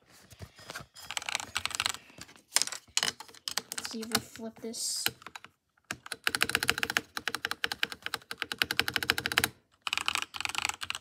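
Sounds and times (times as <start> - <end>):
mechanical keyboard typing: 1.1 - 2.0, 3.0 - 4.4, 5.0 - 11.0.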